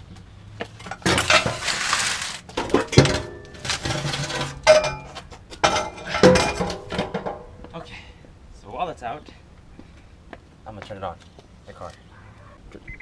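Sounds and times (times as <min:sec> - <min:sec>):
loose metal parts clanking: 0:00.8 - 0:07.8.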